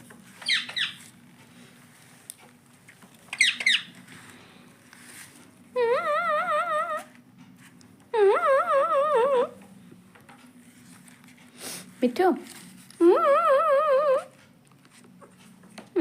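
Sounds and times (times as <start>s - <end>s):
parrot squawks: 0.4s - 1.0s, 3.4s - 3.9s.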